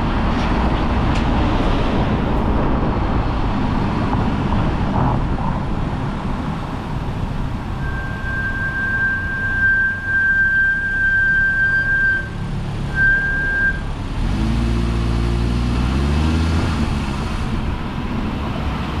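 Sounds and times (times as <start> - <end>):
car engine hum: 0.0 - 19.0
road noise: 0.0 - 19.0
brakes squealing: 7.4 - 19.0.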